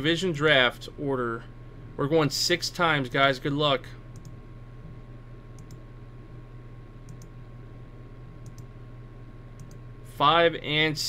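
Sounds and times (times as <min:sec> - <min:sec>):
steady electrical hum: 0:00.0 - 0:11.0
computer mouse clicks: 0:04.1 - 0:04.4, 0:05.6 - 0:05.8, 0:07.0 - 0:07.3, 0:08.4 - 0:08.7, 0:09.6 - 0:09.8.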